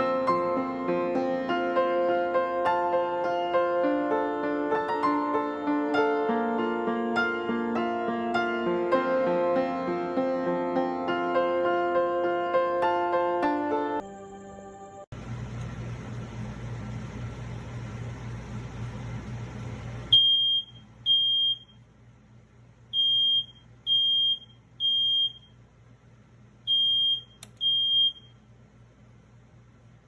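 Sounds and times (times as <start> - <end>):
steady running hum: 15.1 - 30.0
sharp click: 27.4 - 27.7.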